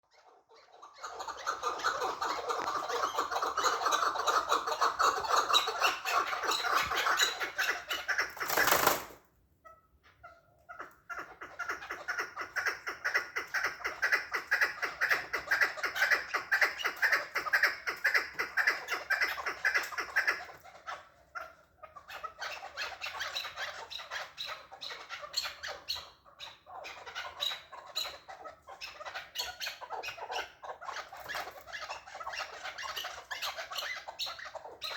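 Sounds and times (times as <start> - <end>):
partridge chattering call: 0.2 - 9.0.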